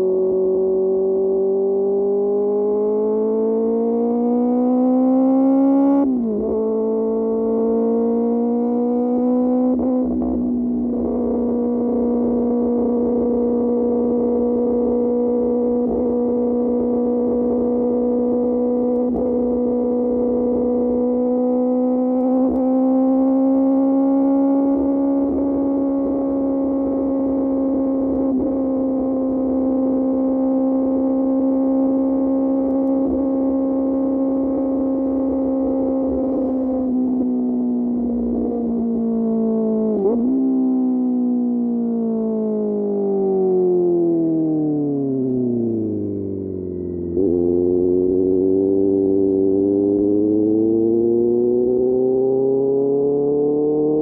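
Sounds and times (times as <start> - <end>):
motorcycle engine cruising: 0.0 - 41.5, 44.8 - 54.0.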